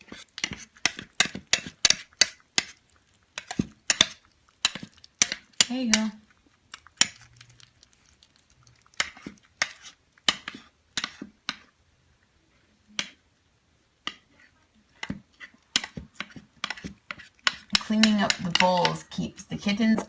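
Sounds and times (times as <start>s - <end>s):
food bowls clacking: 0.0s - 7.8s, 15.0s - 20.0s.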